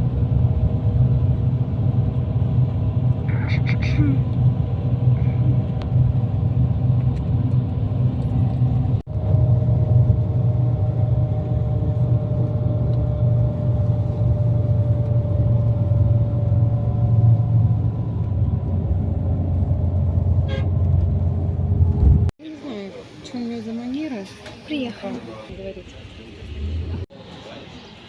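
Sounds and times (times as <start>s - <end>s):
vehicle interior rumble: 0.0s - 22.4s.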